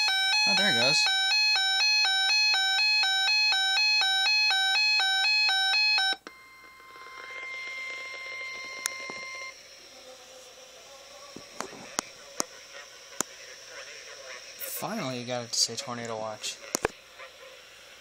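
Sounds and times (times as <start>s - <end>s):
alert radio pulsing beep alarm: 0.0s - 9.6s.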